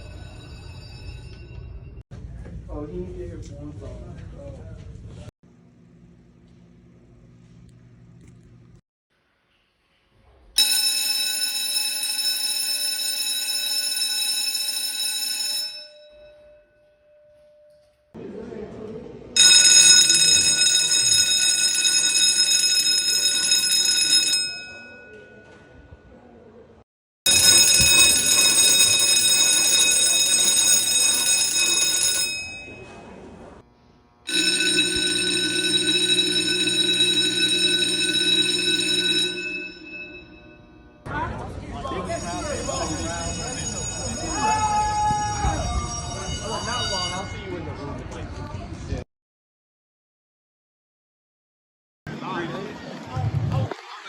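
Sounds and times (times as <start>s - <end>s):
deeper school bell ringing: 0.0s - 2.0s, 10.6s - 17.9s, 19.4s - 25.8s, 27.3s - 33.2s, 34.3s - 41.0s, 41.9s - 47.8s
electric school bell ringing: 0.0s - 2.0s, 10.6s - 18.0s, 19.4s - 25.6s, 27.3s - 33.2s, 34.3s - 41.0s, 41.8s - 45.1s, 45.7s - 47.7s.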